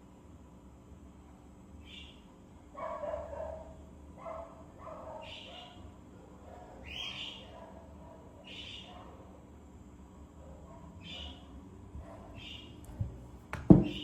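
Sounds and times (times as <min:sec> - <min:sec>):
dog-like barks: 0:02.8 - 0:05.8.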